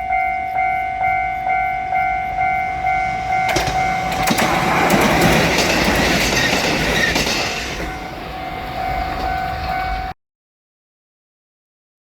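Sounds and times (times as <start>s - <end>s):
level crossing bell ringing: 0.0s - 6.3s, 7.8s - 10.2s
train wheels clicking over rail joints: 2.3s - 9.8s.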